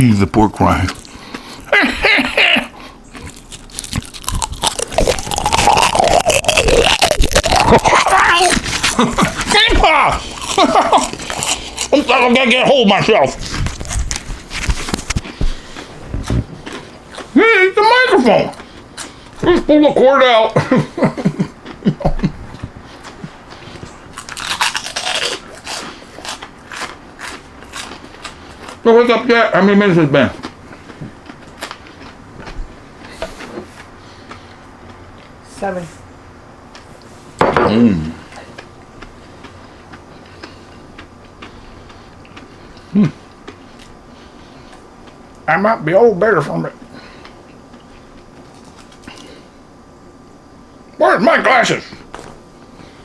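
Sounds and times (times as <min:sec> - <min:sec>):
crunching and chewing pork rinds: 0:00.0 - 0:01.7, 0:02.9 - 0:35.4, 0:38.0 - 0:49.7
crunching crispy pork rinds: 0:03.1 - 0:15.4, 0:24.1 - 0:32.2, 0:48.4 - 0:49.4.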